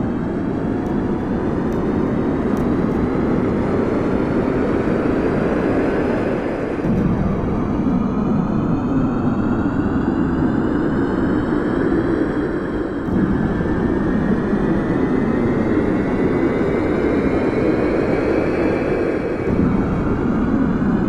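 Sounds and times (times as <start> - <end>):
aeroplane engine noise: 0.0 - 21.0.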